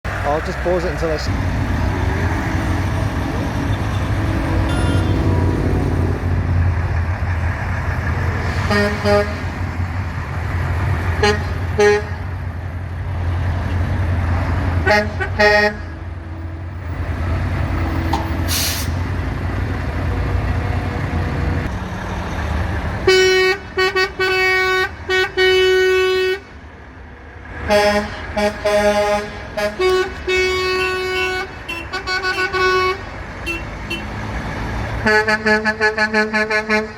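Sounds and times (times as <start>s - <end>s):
diesel engines rumbling: 0.0s - 36.9s
road noise: 0.0s - 36.9s
truck air horns: 3.3s - 6.4s, 8.3s - 9.8s, 11.1s - 12.4s, 14.8s - 16.8s, 17.7s - 19.1s, 23.0s - 26.6s, 27.6s - 34.2s, 35.0s - 36.9s.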